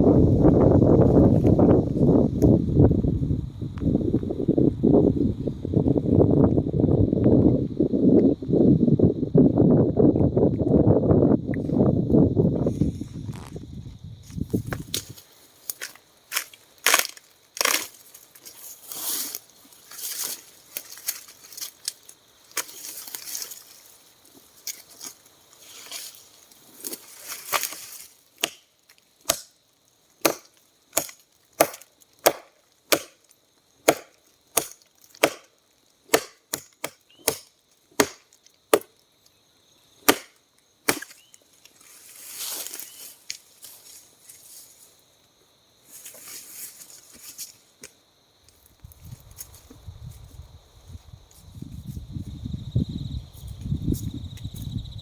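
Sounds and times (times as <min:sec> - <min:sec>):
sharp blows on wood: 0:28.4 - 0:29.5, 0:30.2 - 0:33.2, 0:33.8 - 0:35.5, 0:36.1 - 0:39.0, 0:40.0 - 0:41.2.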